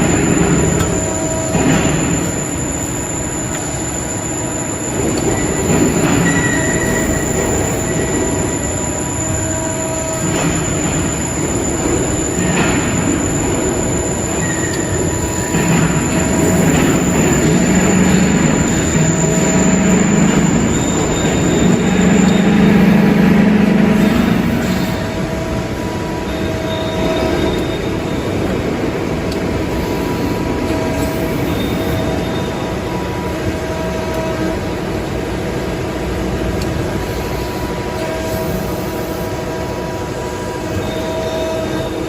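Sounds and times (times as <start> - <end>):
short high squeals: 0.6 - 25.2
low hum: 15.7 - 27.1.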